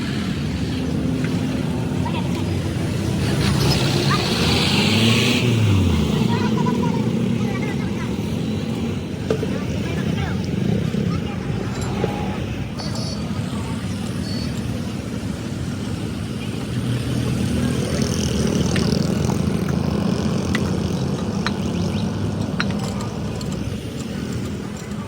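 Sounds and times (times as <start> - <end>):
tractor engine running: 0.0 - 25.0
light clicks and rattles: 20.4 - 25.0.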